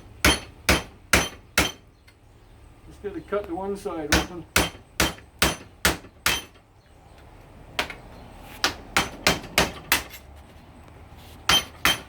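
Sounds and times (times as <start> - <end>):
hammer striking chisel: 0.2 - 1.8, 4.1 - 6.6, 8.6 - 10.2, 11.5 - 12.0.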